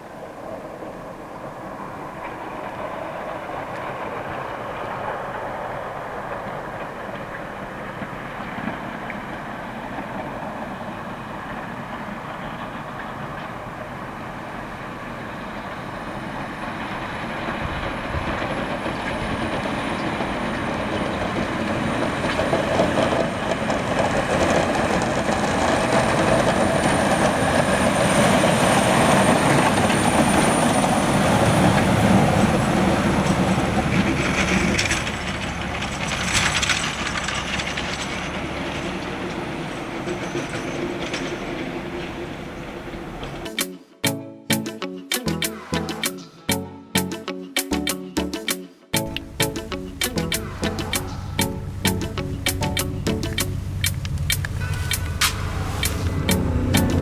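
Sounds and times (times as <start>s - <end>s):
snow plow truck rumbling and scraping: 2.3s - 43.4s, 49.0s - 57.0s
thin high whine: 49.0s - 57.0s.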